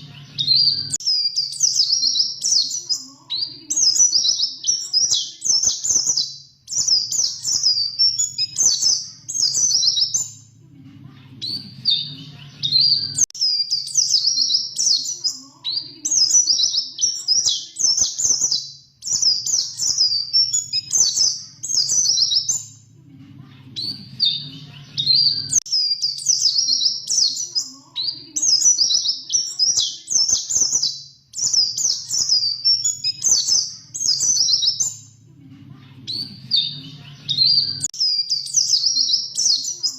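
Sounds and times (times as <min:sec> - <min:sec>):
bird twittering song: 0:00.0 - 0:10.6, 0:11.4 - 0:22.9, 0:23.8 - 0:35.2, 0:36.1 - 0:39.9
faint low hum: 0:22.7 - 0:25.4.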